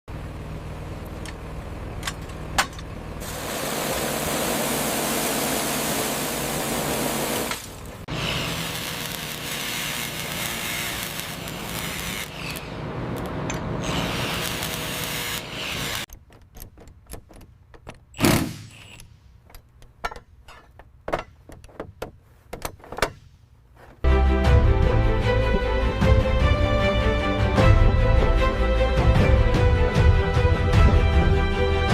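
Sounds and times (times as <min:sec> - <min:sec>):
small motors and gears whirring: 0:07.4 - 0:16.2, 0:18.7 - 0:19.2
clicks and knocks: 0:16.1 - 0:24.0.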